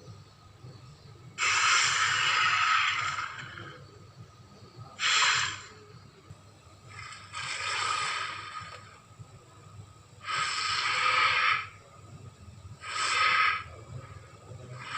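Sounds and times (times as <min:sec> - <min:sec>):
creature snorts: 0:01.4 - 0:03.6, 0:10.2 - 0:11.8, 0:12.8 - 0:13.7
hissing exhalations: 0:01.4 - 0:03.8, 0:05.0 - 0:05.9, 0:06.9 - 0:09.0, 0:10.2 - 0:12.0, 0:12.8 - 0:14.9.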